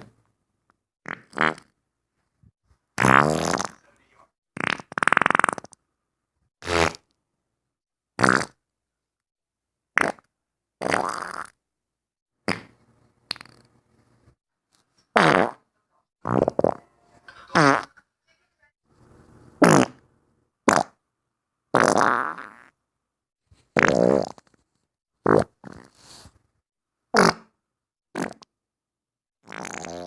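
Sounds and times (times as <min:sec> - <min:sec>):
farts: 0:01.0 - 0:01.8, 0:03.0 - 0:03.8, 0:04.6 - 0:05.8, 0:06.6 - 0:07.1, 0:08.2 - 0:08.6, 0:10.0 - 0:11.6, 0:12.4 - 0:13.7, 0:15.1 - 0:15.6, 0:16.2 - 0:16.9, 0:17.6 - 0:17.9, 0:19.6 - 0:20.0, 0:20.6 - 0:21.0, 0:21.7 - 0:22.8, 0:23.7 - 0:24.6, 0:25.2 - 0:26.3, 0:27.1 - 0:28.5, 0:29.4 - 0:30.0.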